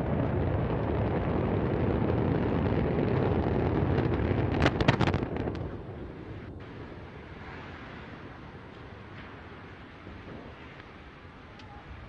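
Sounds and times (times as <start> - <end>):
rocket launch rumble: 0.0 - 11.3
sharp cracks: 3.9 - 5.8.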